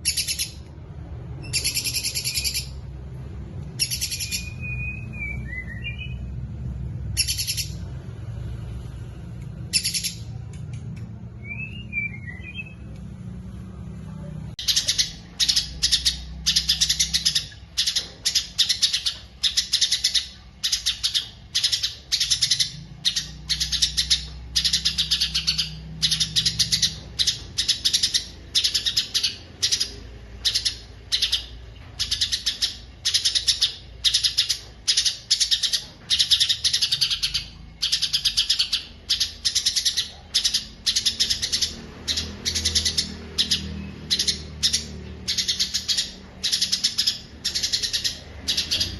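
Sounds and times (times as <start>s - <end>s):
songbird chirping: 14.6s - 48.9s.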